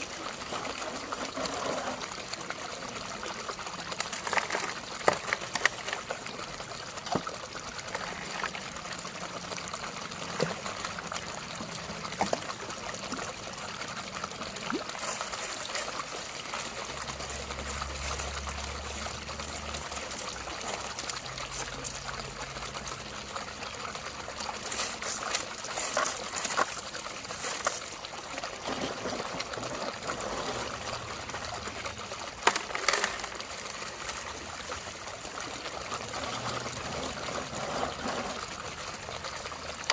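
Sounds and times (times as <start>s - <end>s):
water trickling and splashing: 0.0s - 39.9s.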